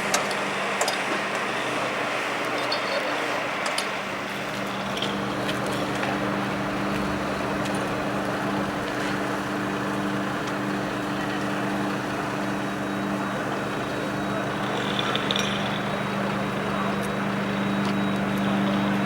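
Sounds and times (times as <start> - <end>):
engine humming steadily: 0.0 - 19.0
faint clicks and clinks: 3.6 - 9.0, 13.8 - 19.0.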